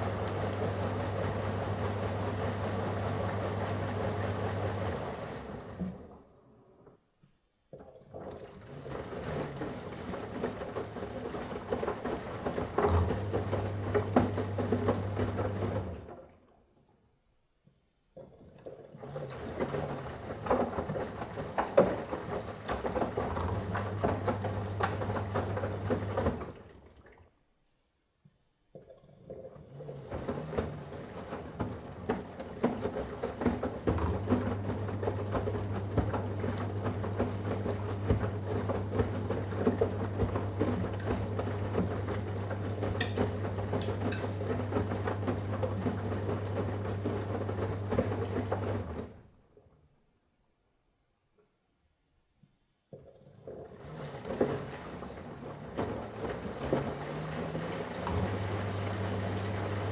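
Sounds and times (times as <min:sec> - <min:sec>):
washing machine drum sloshing: 0:00.0 - 0:06.4, 0:07.7 - 0:16.6, 0:18.2 - 0:27.4, 0:28.7 - 0:49.5, 0:53.0 - 0:59.9
low motor hum: 0:53.0 - 0:59.9.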